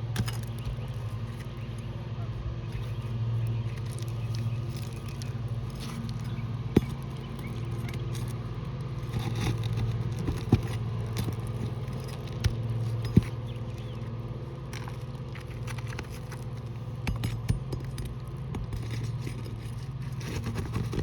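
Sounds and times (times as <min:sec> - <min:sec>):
low engine-like hum: 0:00.0 - 0:21.0.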